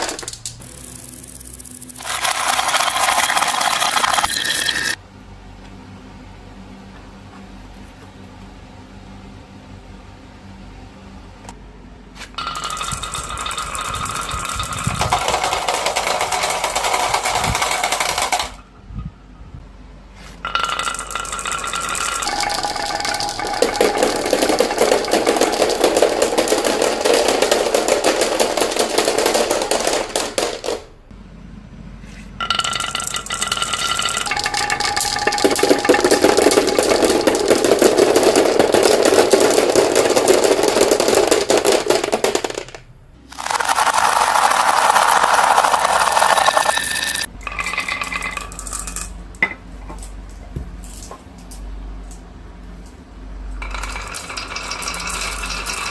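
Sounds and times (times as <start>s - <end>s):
marbles clattering down track: 0.0s - 5.0s, 12.4s - 18.6s, 20.4s - 30.9s, 32.4s - 50.1s, 53.5s - 55.9s.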